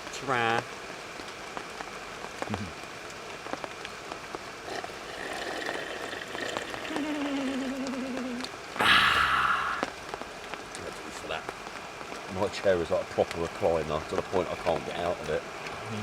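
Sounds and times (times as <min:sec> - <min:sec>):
raindrops ticking close by: 0:00.0 - 0:16.0
steady rain: 0:00.0 - 0:16.0
faint voice-like sound: 0:02.5 - 0:02.7, 0:06.7 - 0:09.9.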